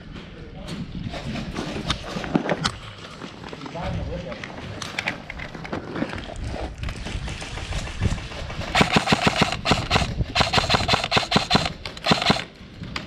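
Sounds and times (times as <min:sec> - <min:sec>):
airsoft rifle full-auto bursts: 0:08.7 - 0:12.6.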